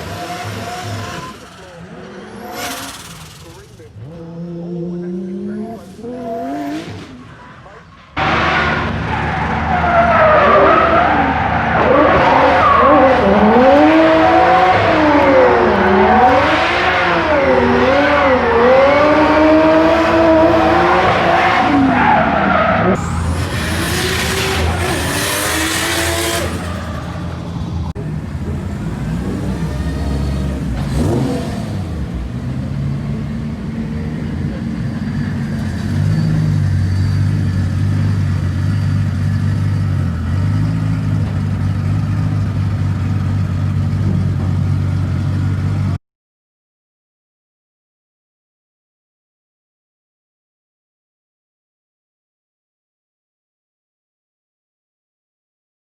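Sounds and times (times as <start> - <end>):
car engine revving: 0.0 - 46.0
tyres squealing: 21.5 - 31.9.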